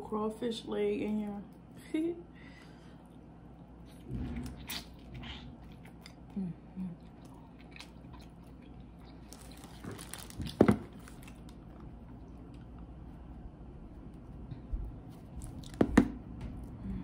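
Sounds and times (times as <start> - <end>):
wet chewing: 2.9 - 16.0.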